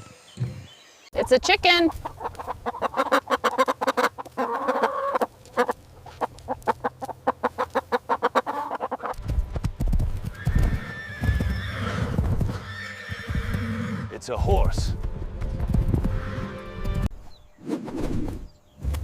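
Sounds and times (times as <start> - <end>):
chickens clucking: 1.2 - 9.2
horse low rumble: 9.2 - 12.7
horse whinny: 10.3 - 14.2.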